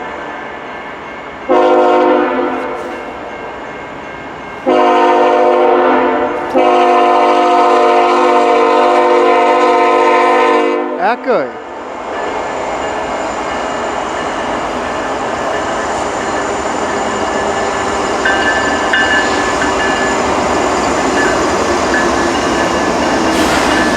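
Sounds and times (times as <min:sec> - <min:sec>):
locomotive air horn blasts: 0:01.5 - 0:02.9, 0:04.6 - 0:11.0.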